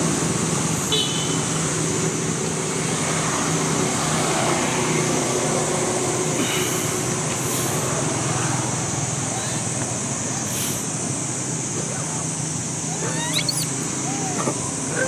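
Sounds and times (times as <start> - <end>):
high hiss: 6.1 - 14.5
faint high-pitched call: 12.9 - 14.8.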